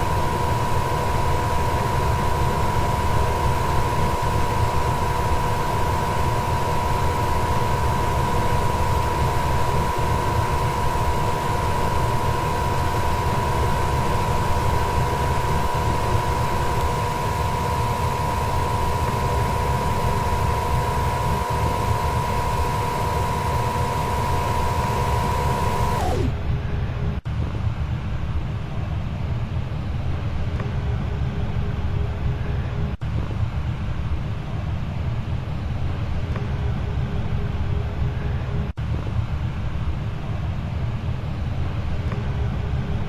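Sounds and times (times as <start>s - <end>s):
furnace motor whine: 0.0s - 27.2s.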